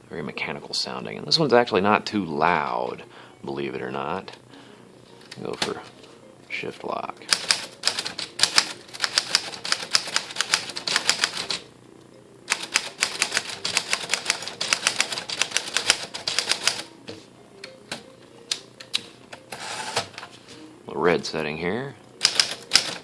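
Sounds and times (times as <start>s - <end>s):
typewriter keystrokes: 7.3s - 11.6s, 12.5s - 16.9s, 22.2s - 23.0s.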